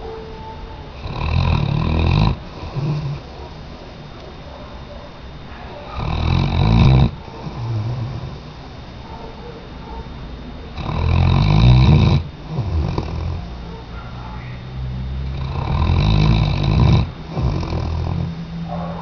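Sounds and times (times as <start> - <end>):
dog snoring: 1.0 - 3.8, 5.5 - 10.1, 10.7 - 14.1, 15.2 - 19.0
soft breaths: 7.1 - 9.7.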